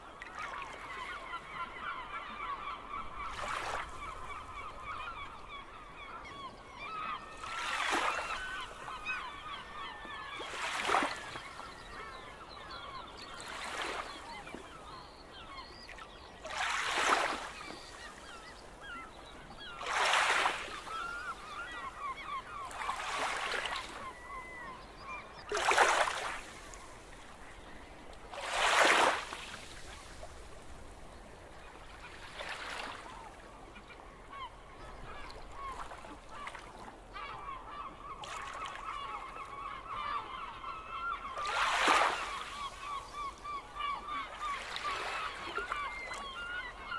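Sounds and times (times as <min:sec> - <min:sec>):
seagulls calling: 0:00.1 - 0:30.7, 0:31.3 - 0:46.9
waves washing on shore: 0:28.3 - 0:30.8.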